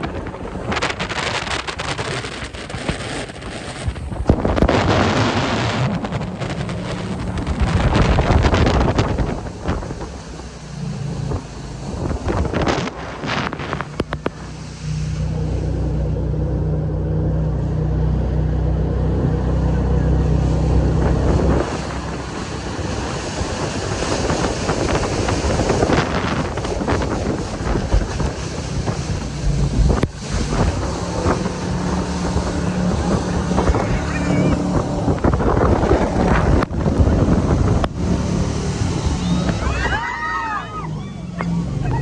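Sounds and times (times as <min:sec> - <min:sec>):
water spray rushing: 0:00.0 - 0:16.4, 0:19.3 - 0:42.0
boat engine running: 0:00.0 - 0:42.0
wind buffeting microphone: 0:00.0 - 0:42.0.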